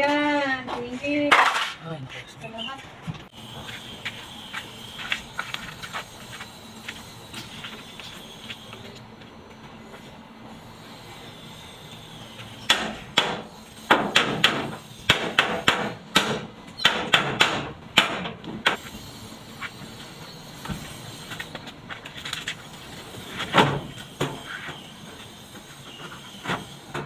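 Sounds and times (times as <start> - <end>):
hammer striking sheet metal: 12.7 - 18.8.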